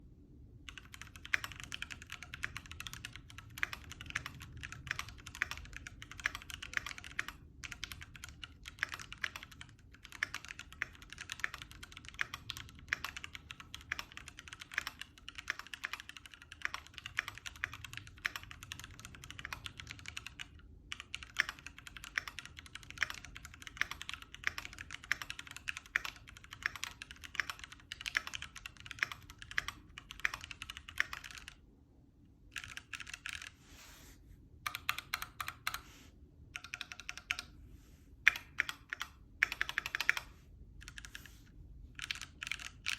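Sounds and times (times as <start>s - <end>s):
mechanical keyboard typing: 0.6s - 31.6s, 32.5s - 33.6s, 34.6s - 35.9s, 36.5s - 37.5s, 38.2s - 41.4s, 42.0s - 42.9s.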